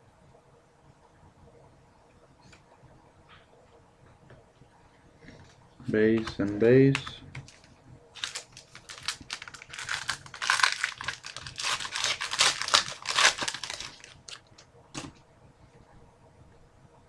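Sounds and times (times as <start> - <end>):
foil wrapper tearing and crinkling: 7.5 - 14.6.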